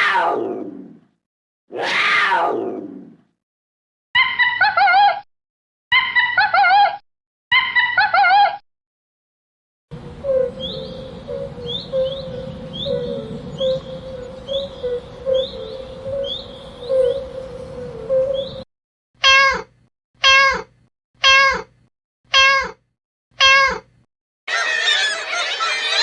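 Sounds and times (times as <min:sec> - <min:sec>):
bird chirping: 0:09.9 - 0:18.6.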